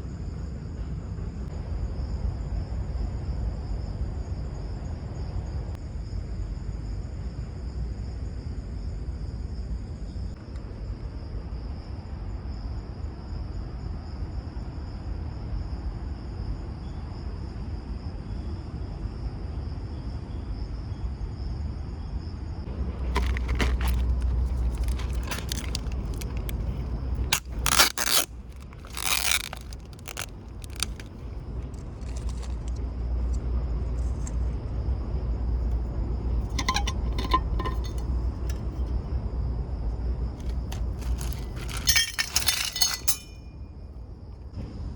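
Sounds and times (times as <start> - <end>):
camping gear scraping and clinking: 22.7 - 32.8, 36.4 - 38.9, 40.4 - 43.4
insect chirring: 23.1 - 32.8.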